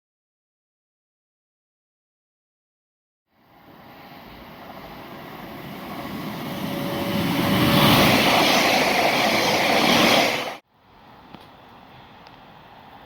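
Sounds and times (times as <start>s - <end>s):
electric train approaching: 3.3s - 10.6s.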